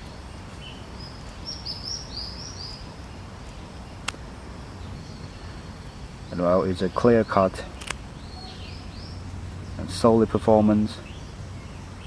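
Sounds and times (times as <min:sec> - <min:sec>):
outdoor background noise: 0:00.0 - 0:12.0
sharp click: 0:07.8 - 0:08.0
bird chirping high notes: 0:08.2 - 0:09.1.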